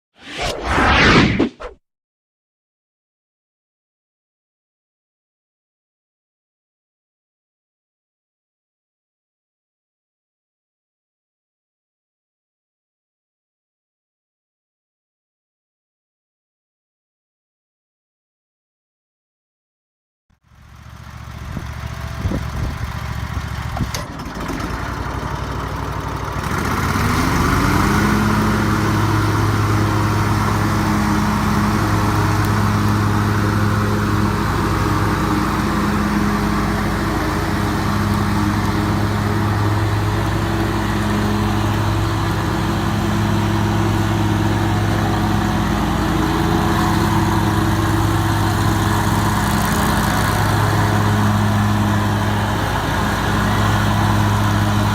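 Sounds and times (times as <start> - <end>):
mower engine droning: 20.5 - 54.9.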